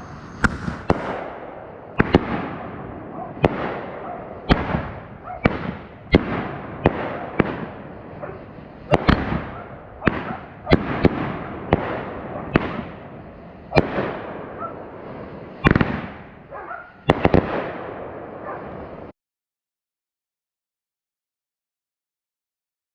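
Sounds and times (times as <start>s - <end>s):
fireworks bangs echoing: 0.0s - 19.1s.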